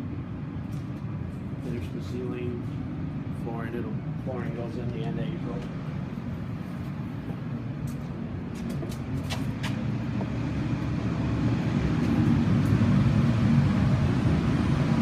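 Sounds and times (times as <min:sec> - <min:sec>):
low machine rumble: 0:00.0 - 0:15.0.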